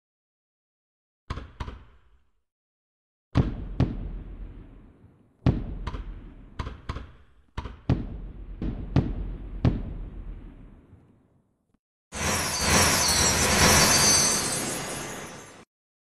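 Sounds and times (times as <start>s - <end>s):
fireworks bangs: 3.4s - 6.6s, 7.9s - 11.2s
fireworks rumble: 3.4s - 6.6s, 7.9s - 11.2s.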